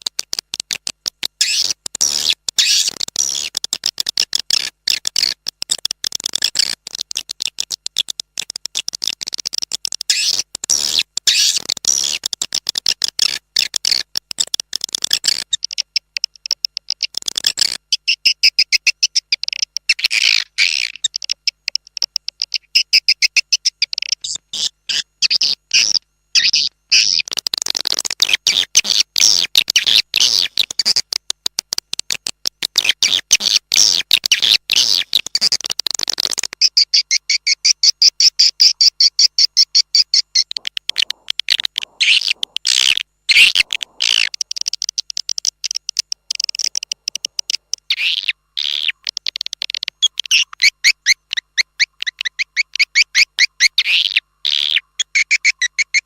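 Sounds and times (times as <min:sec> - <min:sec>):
swiftlet twittering chirps: 0:36.7 - 0:56.0.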